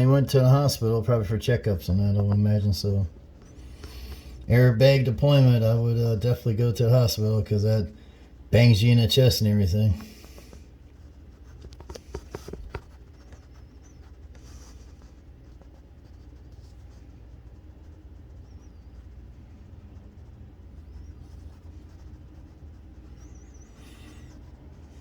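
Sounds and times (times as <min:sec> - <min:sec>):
low steady hum: 0:00.0 - 0:25.0
phone being handled: 0:10.0 - 0:14.0.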